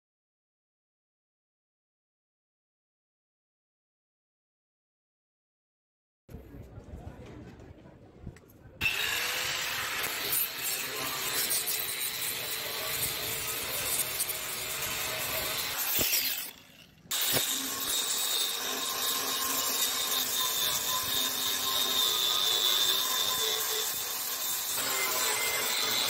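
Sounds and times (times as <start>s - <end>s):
power tool whining: 8.8s - 26.0s.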